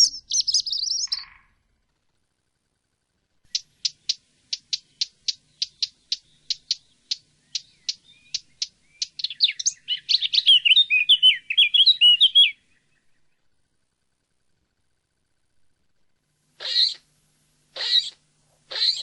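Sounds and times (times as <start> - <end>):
songbird sharp call notes: 0.0 - 1.6, 3.5 - 13.4, 16.6 - 17.0, 17.8 - 19.0
songbird warbling song: 0.0 - 1.6, 3.5 - 13.6, 16.6 - 17.0, 17.8 - 19.0.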